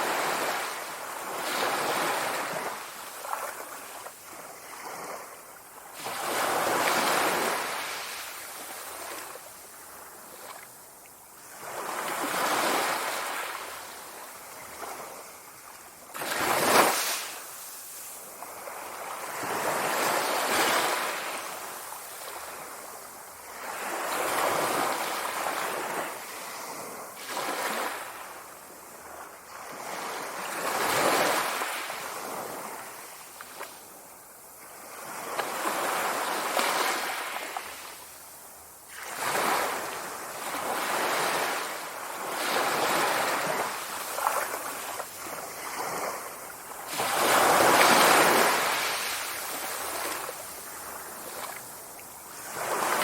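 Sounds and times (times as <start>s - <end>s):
sea waves breaking: 16.1s - 22.6s, 38.9s - 53.0s.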